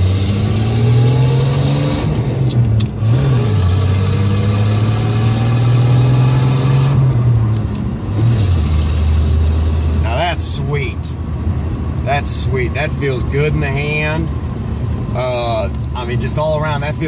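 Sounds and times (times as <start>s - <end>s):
car engine accelerating: 0.0s - 10.5s.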